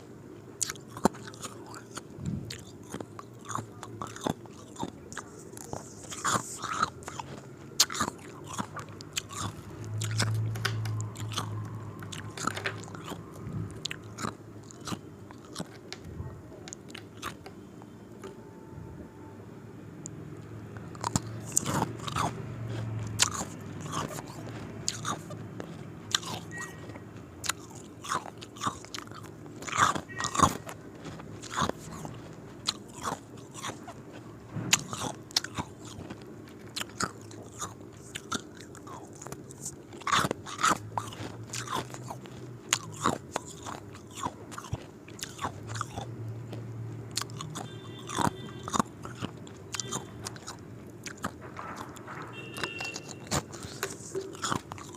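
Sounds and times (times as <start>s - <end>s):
ice cubes crunching: 23.1s - 33.9s, 34.7s - 46.1s, 47.2s - 54.9s.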